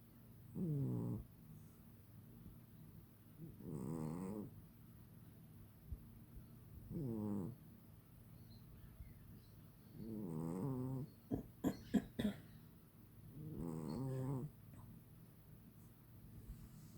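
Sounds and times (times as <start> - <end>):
cat snoring: 0.6 - 1.2, 3.4 - 4.5, 6.9 - 7.6, 10.0 - 11.1, 13.3 - 14.5.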